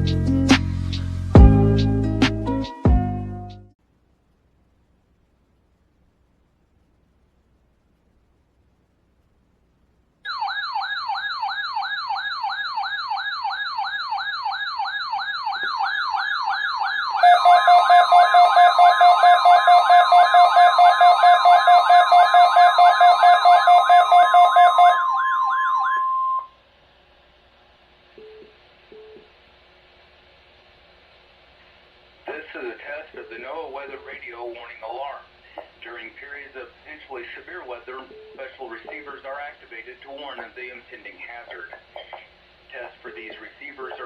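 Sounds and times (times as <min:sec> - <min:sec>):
faint hiss: 0:03.8 - 0:10.3, 0:26.5 - 0:44.0
steady warning alarm tone: 0:10.3 - 0:26.5
warbling siren tone: 0:10.3 - 0:26.5.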